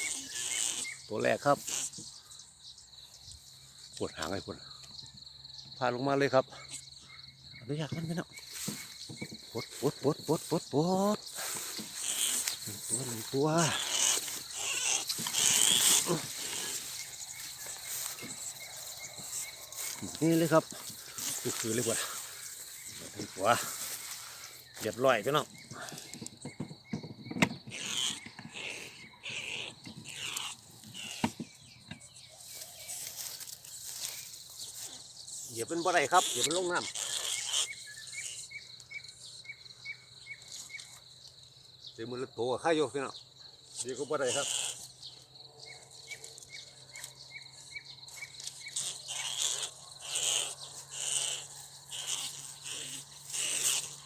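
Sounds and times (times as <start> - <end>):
insects chirping: 0.0 - 54.0
rustling and handling noises: 8.4 - 26.4, 30.8 - 35.0.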